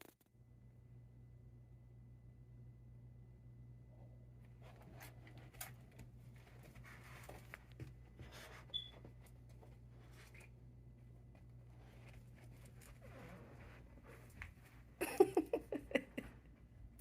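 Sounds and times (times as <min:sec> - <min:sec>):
smoke detector chirp: 0:08.7 - 0:09.0.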